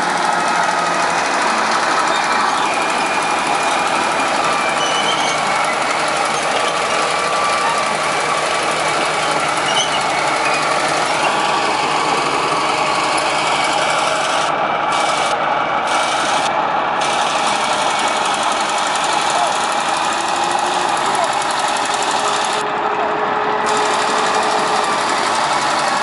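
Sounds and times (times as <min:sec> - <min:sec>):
heavy machinery engine running: 0:00.0 - 0:26.0.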